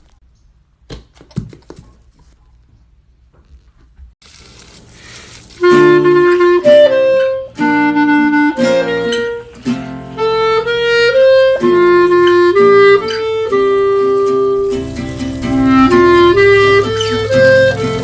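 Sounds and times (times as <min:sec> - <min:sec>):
reedy melody: 0:05.6 - 0:18.0.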